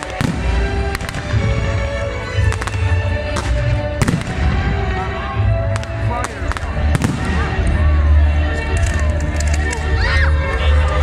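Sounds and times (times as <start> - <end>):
fireworks booms and cracks: 0.0 - 5.0, 5.7 - 7.8
music playing: 0.0 - 11.0.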